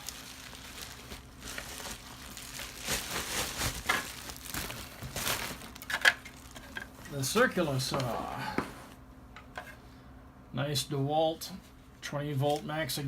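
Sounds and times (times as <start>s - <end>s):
packaging rustling and crinkling: 0.0s - 8.3s.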